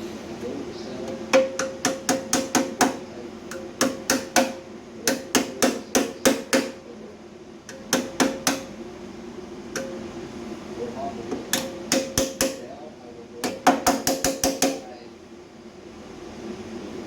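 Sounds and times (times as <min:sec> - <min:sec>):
hammer tapping on sheet metal: 0:01.1 - 0:06.8, 0:07.7 - 0:08.7, 0:09.7 - 0:10.0, 0:11.3 - 0:12.7, 0:13.4 - 0:14.9.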